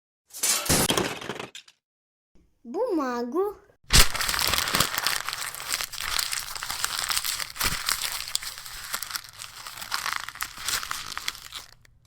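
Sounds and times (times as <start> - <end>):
paper crumpling: 3.9 - 12.0.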